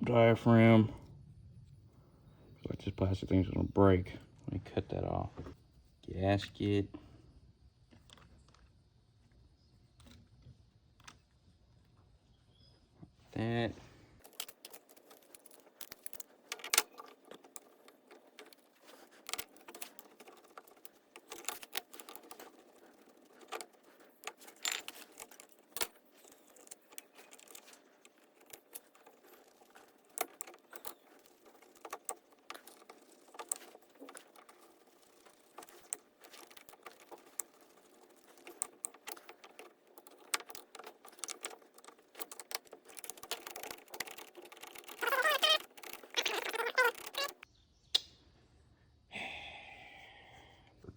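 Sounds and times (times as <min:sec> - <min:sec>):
small metal parts clinking: 0:14.2 - 0:47.4.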